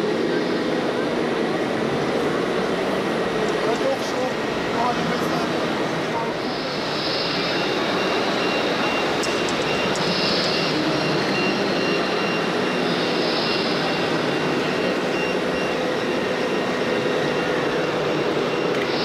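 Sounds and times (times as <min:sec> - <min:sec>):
reversing warning beep: 0:06.6 - 0:19.0.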